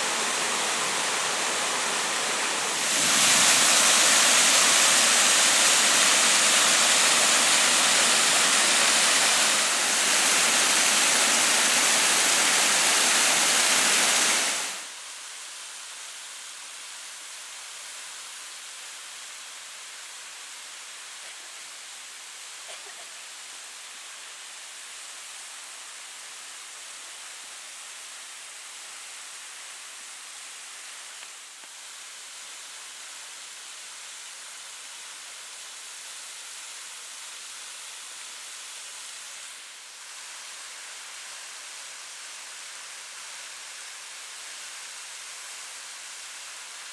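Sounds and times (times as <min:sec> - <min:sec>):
waterfall rushing: 0:00.0 - 0:14.9.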